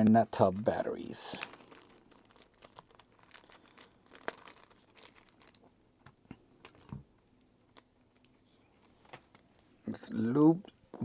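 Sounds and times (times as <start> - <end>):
light crinkling: 0.4 - 5.8.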